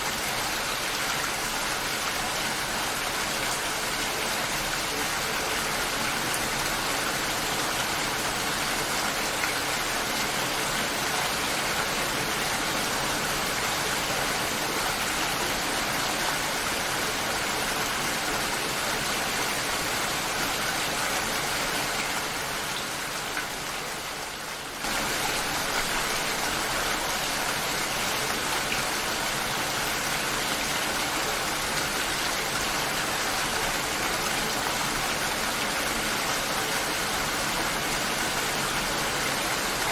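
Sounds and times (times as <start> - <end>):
rain falling steadily: 0.0 - 39.9.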